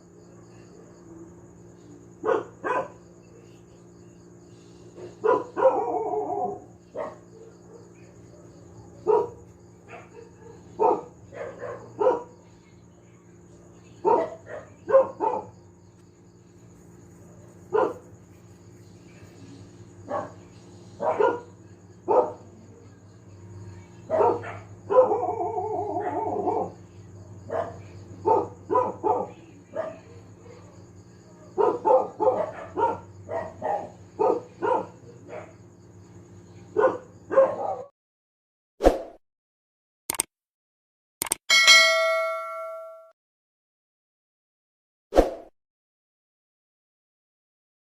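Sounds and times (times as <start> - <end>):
dog barking: 2.2 - 3.1, 5.0 - 12.5, 14.0 - 15.6, 17.2 - 18.1, 20.0 - 22.6, 24.0 - 30.8, 31.5 - 35.7, 36.7 - 37.9.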